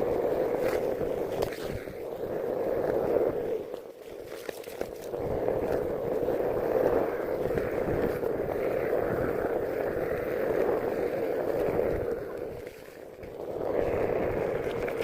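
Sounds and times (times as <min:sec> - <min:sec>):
tyre rolling on wet pavement: 0:04.0 - 0:15.0.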